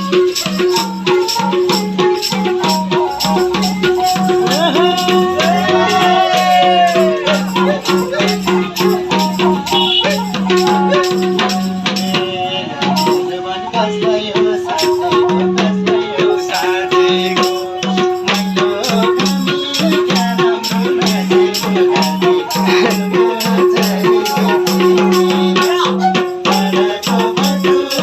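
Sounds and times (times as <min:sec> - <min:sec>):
bowed string melody: 0:00.0 - 0:27.4
fast steady percussion: 0:00.0 - 0:28.0.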